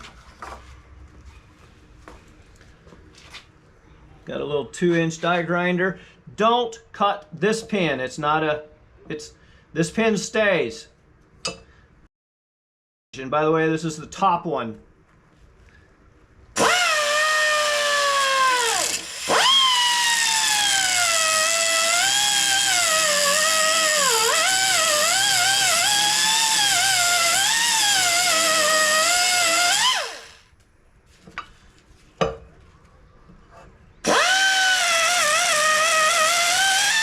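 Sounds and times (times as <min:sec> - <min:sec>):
die grinder whining: 0:16.6 - 0:30.5, 0:34.0 - 0:37.0.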